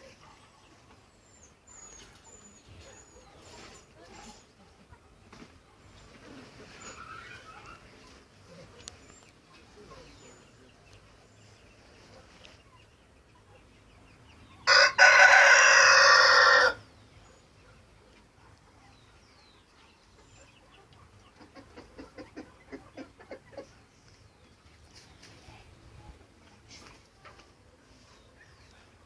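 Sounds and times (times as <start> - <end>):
rooster crowing: 14.6 - 16.8.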